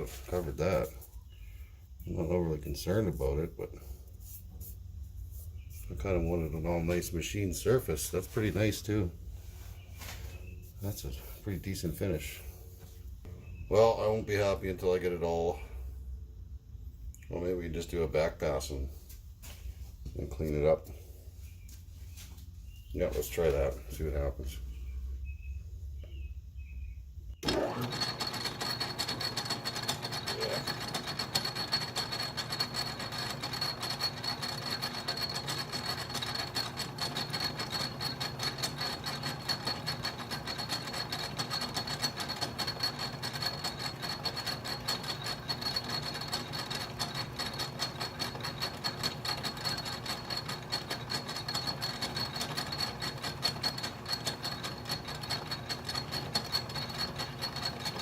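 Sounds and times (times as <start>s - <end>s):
metal lathe running: 27.4s - 58.0s.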